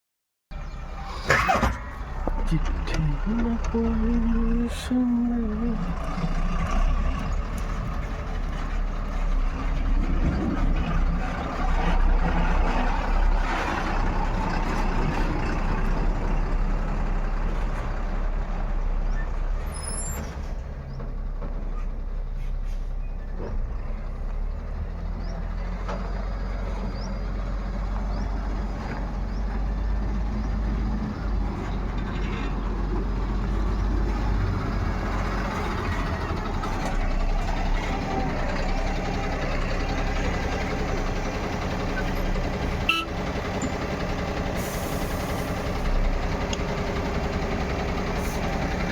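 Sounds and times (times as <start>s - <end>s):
low engine drone: 0.5s - 8.6s
diesel engines running: 0.5s - 48.9s.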